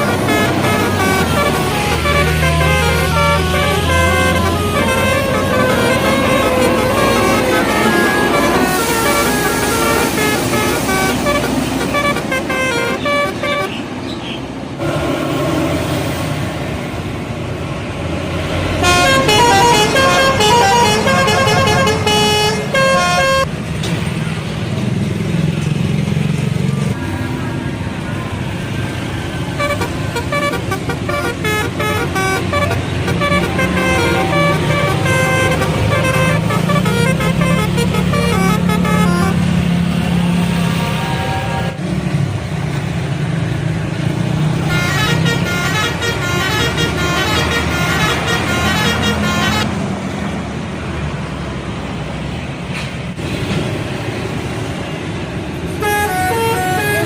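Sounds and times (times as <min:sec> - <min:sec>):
multi-tone bus air horns: 0:00.0 - 0:14.0, 0:18.6 - 0:23.5, 0:29.2 - 0:41.8, 0:44.4 - 0:49.8, 0:55.7 - 0:57.0
engine and traffic rumble: 0:00.0 - 0:57.0.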